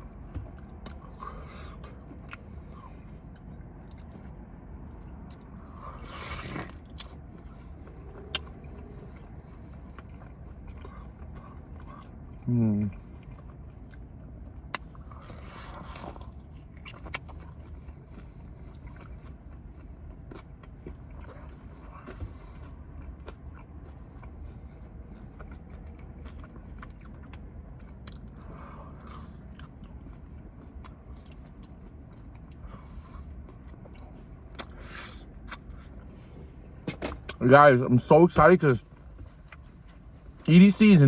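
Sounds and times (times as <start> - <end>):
person chewing food: 0.0 - 37.4, 38.8 - 40.5.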